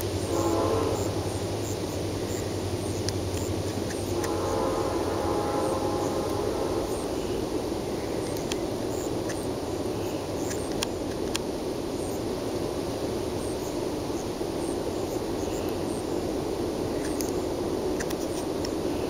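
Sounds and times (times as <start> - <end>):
steady low rumbling: 0.0 - 19.0
light clicks: 8.3 - 8.6, 10.4 - 11.5.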